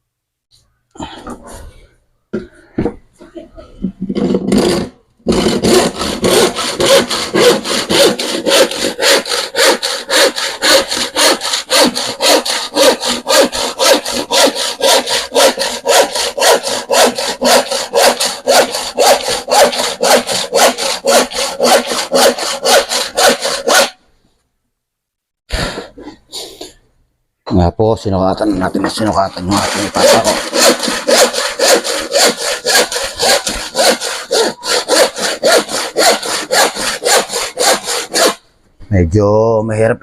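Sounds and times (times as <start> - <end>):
hand saw cutting plywood: 4.1 - 24.0, 28.5 - 38.4.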